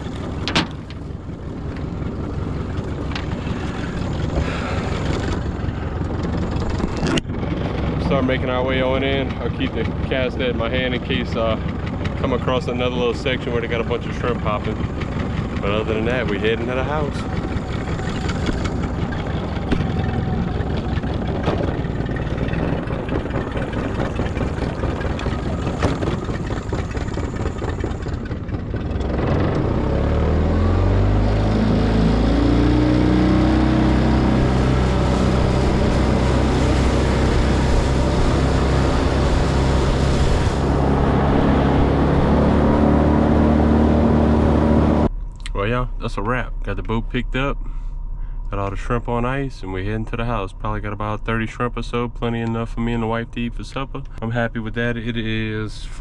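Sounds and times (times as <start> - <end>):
motor running: 0.0 - 45.1
engine droning: 0.0 - 56.0
wind rushing over microphone: 31.0 - 45.1.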